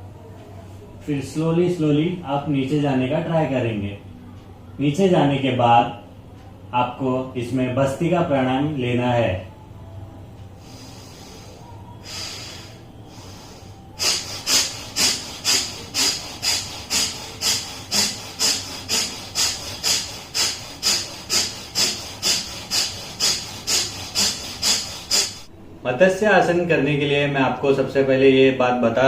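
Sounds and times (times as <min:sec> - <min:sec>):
person breathing hard through nose: 0:10.6 - 0:25.5.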